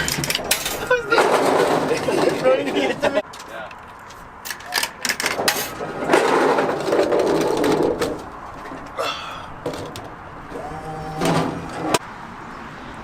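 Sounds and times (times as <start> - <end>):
golf ball dispenser rattling: 4.5 - 9.0.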